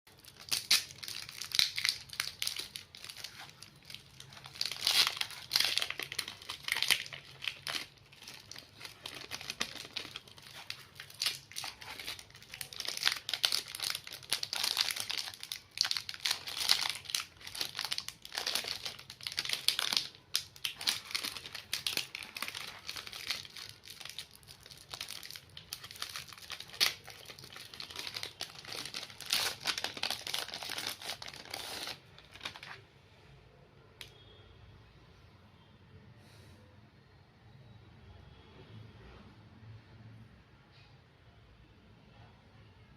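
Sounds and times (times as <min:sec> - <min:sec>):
wrapper crinkling and rustling: 0:00.1 - 0:32.8
wrapper tearing: 0:00.1 - 0:32.8.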